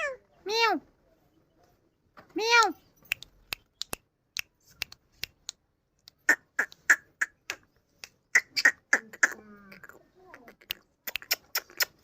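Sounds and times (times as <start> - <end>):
parrot clicking and chirping: 2.6 - 12.0.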